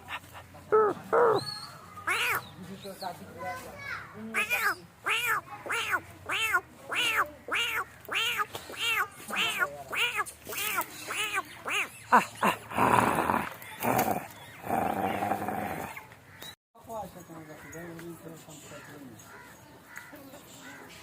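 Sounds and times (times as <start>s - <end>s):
puppy crying: 0.7s - 2.4s, 4.4s - 11.9s.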